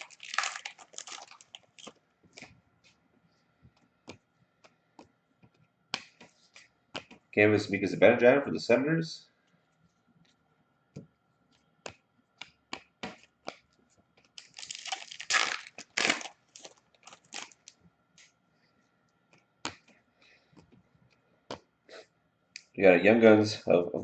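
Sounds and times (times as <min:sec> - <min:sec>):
wrapper crackling: 0:00.0 - 0:02.5, 0:14.4 - 0:17.8
cards clicking and tapping: 0:03.7 - 0:07.2, 0:11.8 - 0:14.4.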